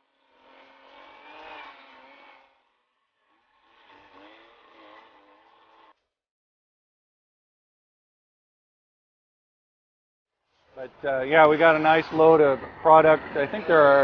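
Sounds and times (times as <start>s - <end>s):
chainsaw engine revving: 0.0s - 6.0s.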